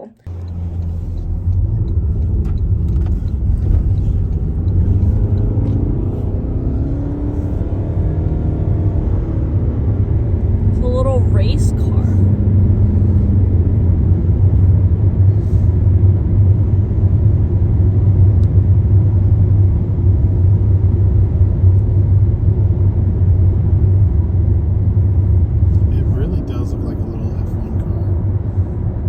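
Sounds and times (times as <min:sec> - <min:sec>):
car engine rumble: 0:00.0 - 0:29.0
road noise: 0:00.0 - 0:29.0.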